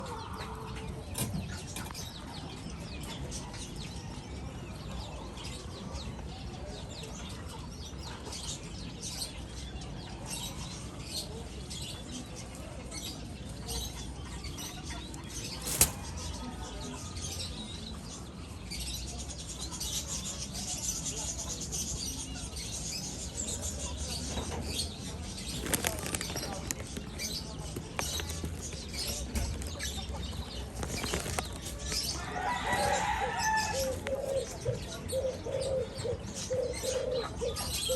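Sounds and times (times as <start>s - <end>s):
doves fluttering wings: 15.1s - 16.5s, 25.3s - 34.6s.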